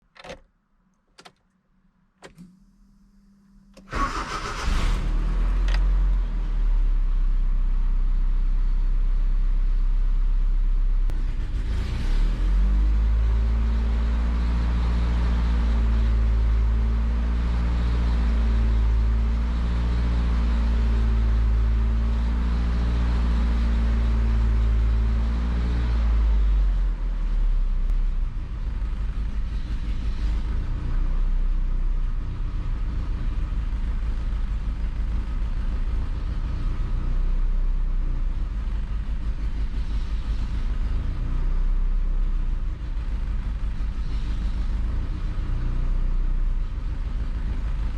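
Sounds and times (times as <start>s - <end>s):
engine starting and surging idle: 3.7s - 6.8s, 11.1s - 13.1s.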